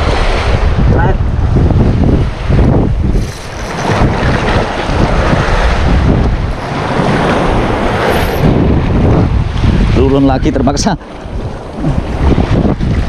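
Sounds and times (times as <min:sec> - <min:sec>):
waves breaking on shore: 0:00.0 - 0:13.0
wind buffeting microphone: 0:00.0 - 0:13.0.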